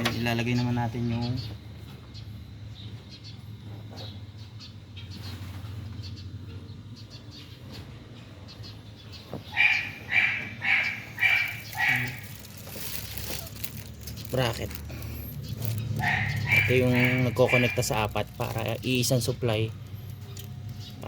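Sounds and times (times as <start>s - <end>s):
animal calling: 9.1s - 18.7s.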